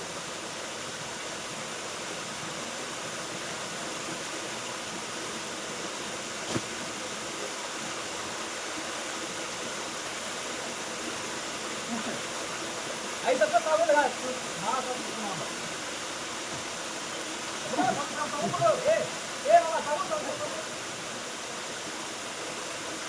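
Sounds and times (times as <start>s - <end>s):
waterfall roaring: 10.9s - 22.4s.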